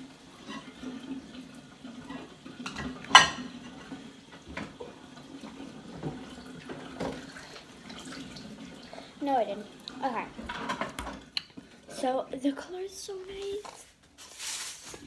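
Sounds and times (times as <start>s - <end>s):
tap water running: 0.0s - 15.0s
dishes and cutlery clinking: 2.1s - 4.8s.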